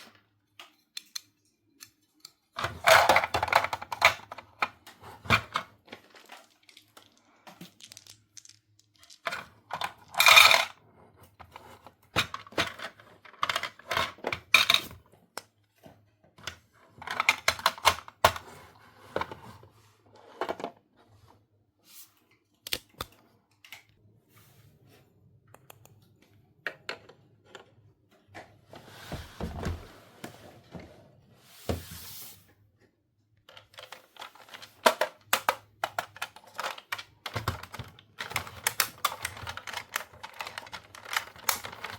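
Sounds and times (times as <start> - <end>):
packaging rustling and crinkling: 5.9 - 10.2
plastic toy pieces clicking: 6.2 - 10.7, 33.5 - 41.9.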